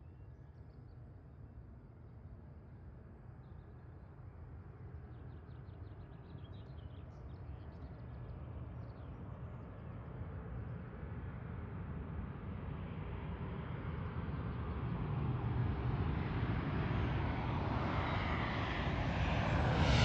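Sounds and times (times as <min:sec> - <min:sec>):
jet engines rumbling: 0:19.4 - 0:20.0.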